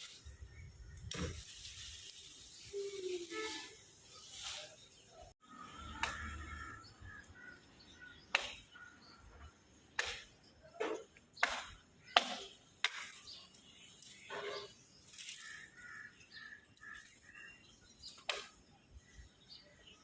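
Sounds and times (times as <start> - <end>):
small birds chirping: 0.0 - 20.0
crows cawing: 5.7 - 9.0, 15.3 - 17.1.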